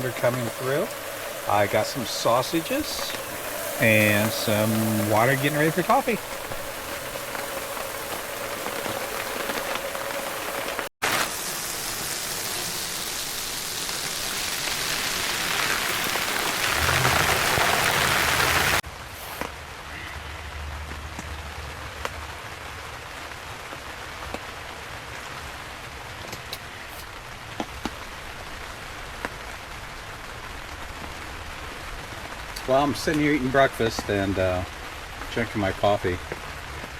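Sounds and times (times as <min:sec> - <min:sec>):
loud hiss: 0:00.0 - 0:19.5
rain on tent fabric: 0:00.0 - 0:36.9.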